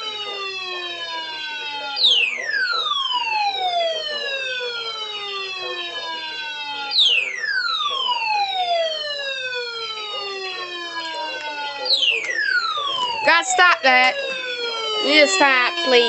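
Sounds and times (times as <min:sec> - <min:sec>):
falling electronic alert tone: 0:11.2 - 0:16.0.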